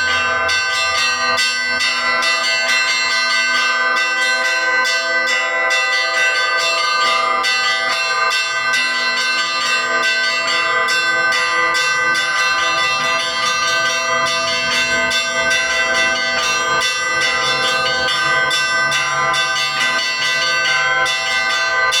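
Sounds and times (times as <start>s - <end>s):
church bells ringing: 0.0s - 22.0s.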